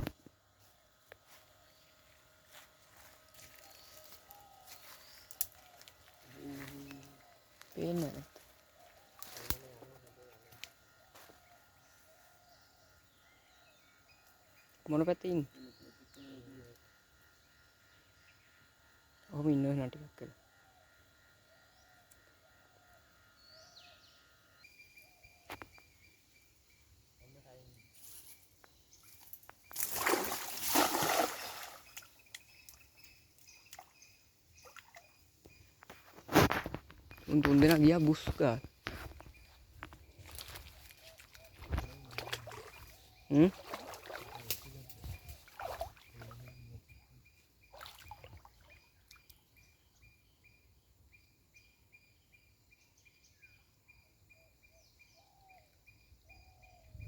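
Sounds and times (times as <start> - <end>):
birds chirping: 0.0 - 57.0
water splashing: 29.8 - 32.1, 41.8 - 44.7, 45.4 - 46.4.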